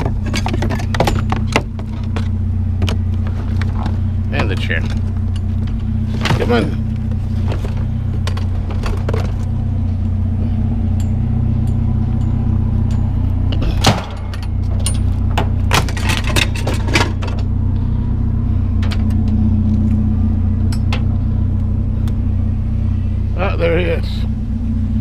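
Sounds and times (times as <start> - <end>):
sharp clicks and knocks: 0.0 - 6.5
vehicle engine humming: 0.0 - 25.0.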